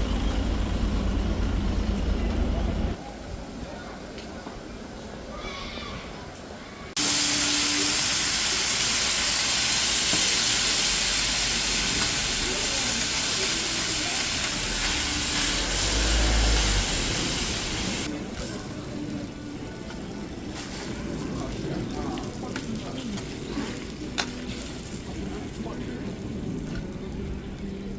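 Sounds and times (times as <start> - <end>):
voices: 0.0 - 27.9
loud cooking hiss: 7.0 - 25.8
food sizzling: 7.0 - 26.4.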